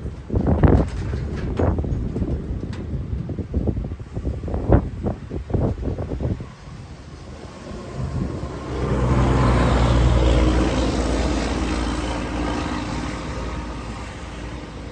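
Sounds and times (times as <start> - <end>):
rolling thunder: 0.0 - 14.9.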